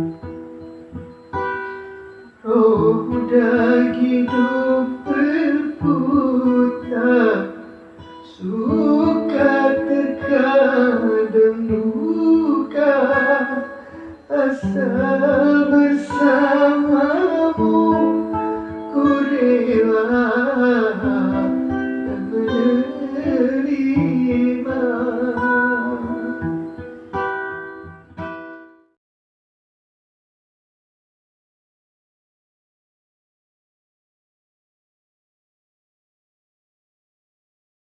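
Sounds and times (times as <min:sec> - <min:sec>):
fingerpicked guitar: 0:00.0 - 0:29.0.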